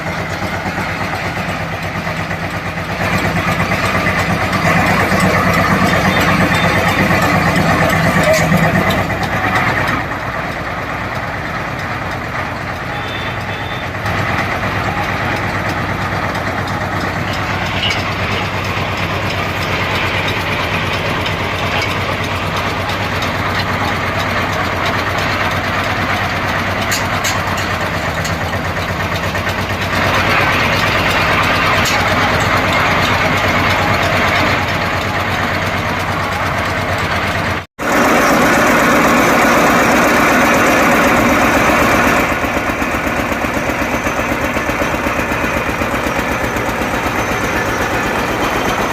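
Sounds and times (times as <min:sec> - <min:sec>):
drilling rig engine running: 0:00.0 - 0:48.9.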